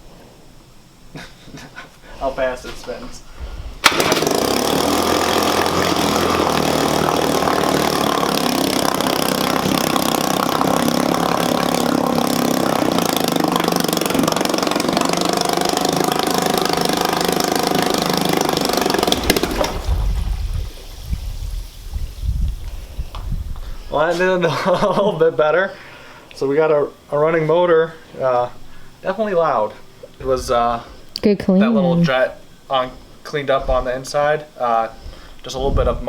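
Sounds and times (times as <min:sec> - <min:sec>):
outboard motor running: 0:03.8 - 0:21.8.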